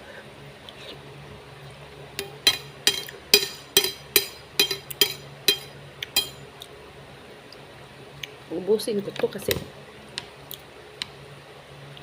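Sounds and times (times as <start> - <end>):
metal utensil clinking on bowl: 2.2 - 6.4.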